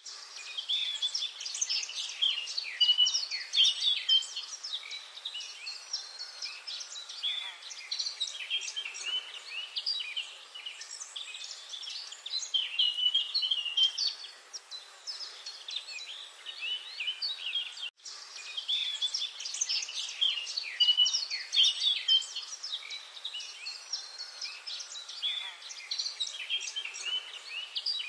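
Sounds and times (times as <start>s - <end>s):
light background hiss: 0.0s - 28.0s
songbirds chirping and singing: 0.0s - 28.0s.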